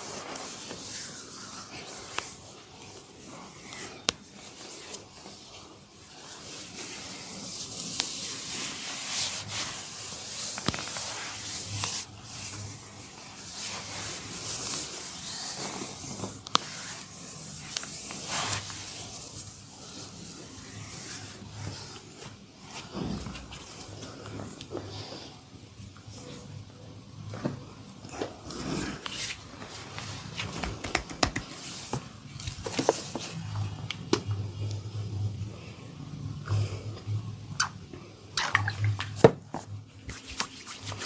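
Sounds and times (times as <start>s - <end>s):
hands rubbing hair and skin: 0.0s - 24.8s, 28.8s - 34.0s, 38.4s - 41.0s.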